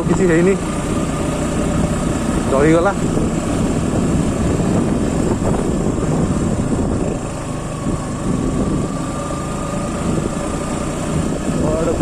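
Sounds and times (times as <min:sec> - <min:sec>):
motorcycle engine: 0:00.0 - 0:12.0
road noise: 0:00.0 - 0:12.0
wind noise on microphone: 0:01.4 - 0:12.0.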